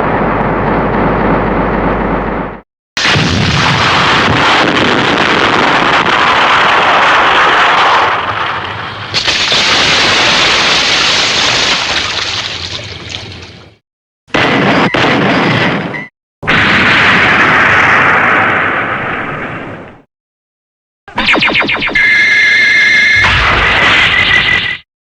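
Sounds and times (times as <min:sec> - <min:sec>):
explosion sound effects: 0:00.0 - 0:12.2, 0:14.3 - 0:20.1, 0:23.2 - 0:24.8.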